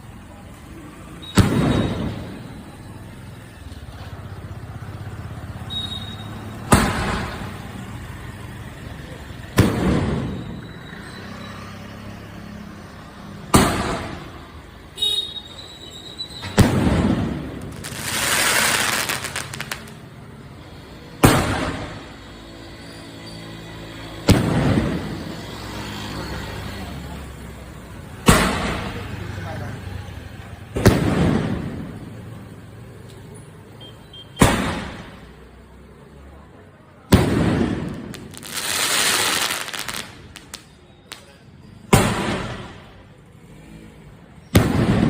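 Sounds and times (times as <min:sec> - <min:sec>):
fireworks bangs with echo: 0:01.2 - 0:02.8, 0:05.7 - 0:07.9, 0:09.3 - 0:10.8, 0:13.4 - 0:15.0, 0:16.3 - 0:22.3, 0:24.2 - 0:25.6, 0:27.9 - 0:32.4, 0:34.4 - 0:35.4, 0:37.0 - 0:43.1, 0:44.4 - 0:45.0.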